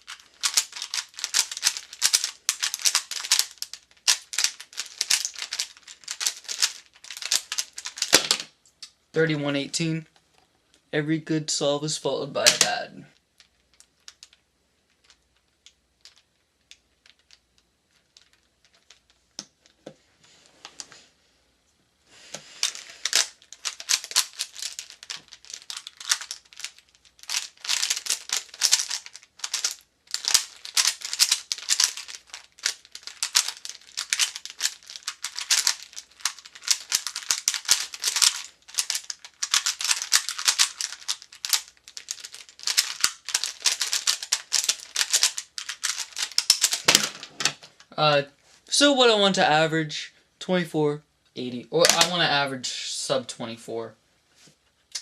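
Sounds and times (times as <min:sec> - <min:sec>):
plastic cube clicking and rattling: 0:00.0 - 0:08.4, 0:13.4 - 0:19.1, 0:22.6 - 0:47.3.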